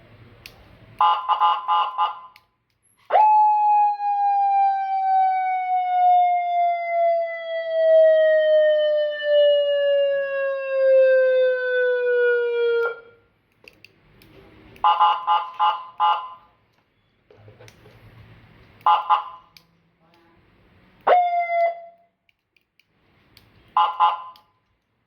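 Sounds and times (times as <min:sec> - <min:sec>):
police siren pulses and wail: 0:01.0 - 0:13.3, 0:14.8 - 0:16.4, 0:18.8 - 0:19.6, 0:21.0 - 0:22.1, 0:23.7 - 0:24.5.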